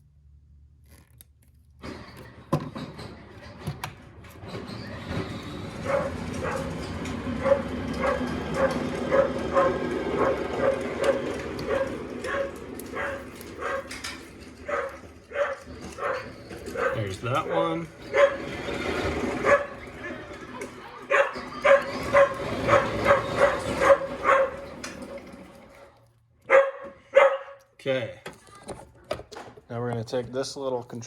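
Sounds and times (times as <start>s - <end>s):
dog barking and yipping: 5.7s - 25.0s, 26.4s - 27.6s.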